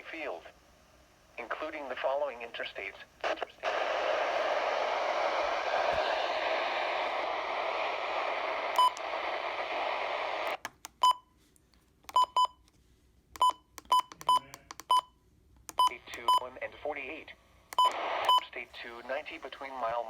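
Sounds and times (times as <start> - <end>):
radio static hiss: 0.0 - 10.6, 15.9 - 20.0.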